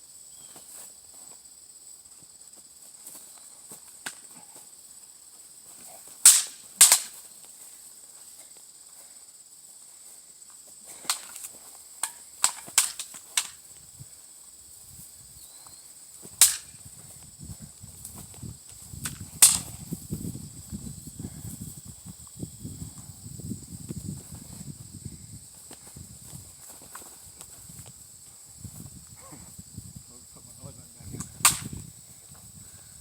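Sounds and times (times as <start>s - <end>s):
sharp cracks: 4.0s - 4.4s, 6.2s - 7.3s, 11.0s - 13.7s, 16.3s - 16.8s, 19.0s - 19.8s, 31.2s - 31.9s.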